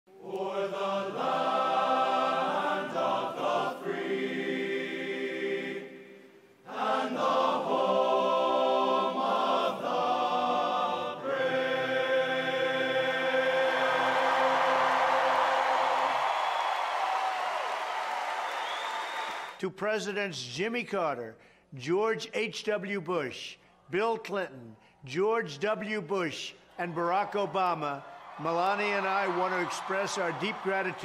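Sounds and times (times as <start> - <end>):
choir singing held chords: 0.1 - 16.3.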